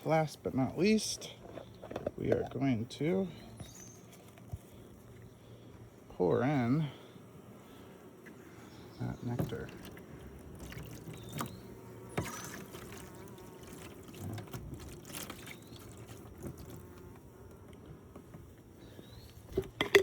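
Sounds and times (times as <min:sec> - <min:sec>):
honeybees buzzing: 0:00.0 - 0:20.0
syrup pouring into feeder: 0:09.4 - 0:11.6, 0:12.2 - 0:16.9.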